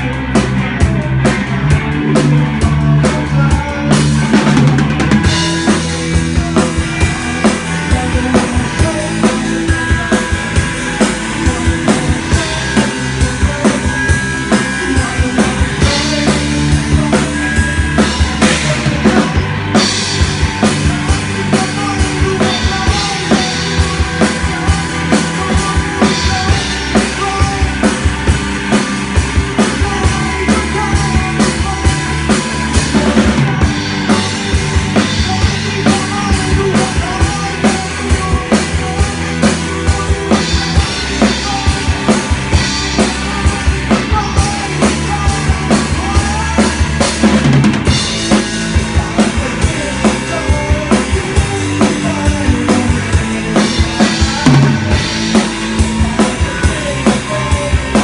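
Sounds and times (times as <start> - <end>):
drum kit beat: 0.0 - 58.0
rock band playing: 0.0 - 58.0.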